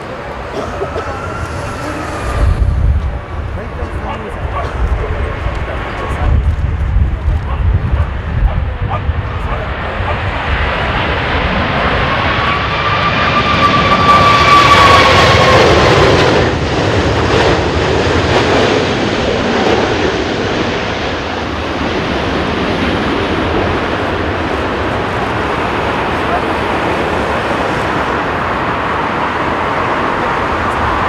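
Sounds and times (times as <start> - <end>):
airliner flying past: 0.0 - 31.0
engine whine falling in pitch: 0.6 - 3.6.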